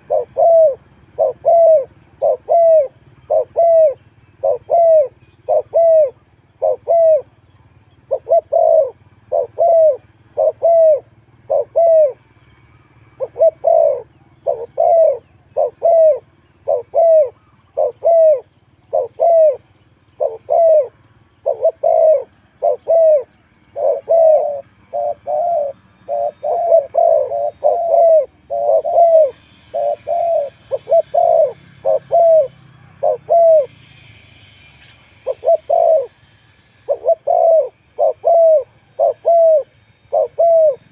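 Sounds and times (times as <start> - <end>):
dove cooing: 0.0 - 33.8, 35.1 - 40.9.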